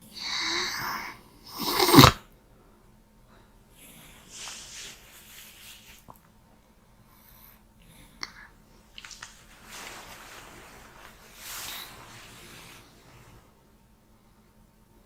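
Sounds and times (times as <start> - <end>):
woman snoring: 0.0 - 2.2.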